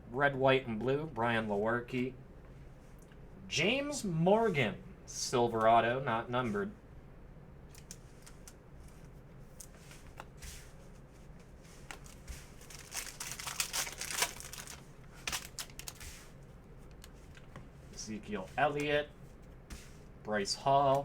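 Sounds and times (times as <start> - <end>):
plastic wrapper crinkling and tearing: 11.9 - 16.2.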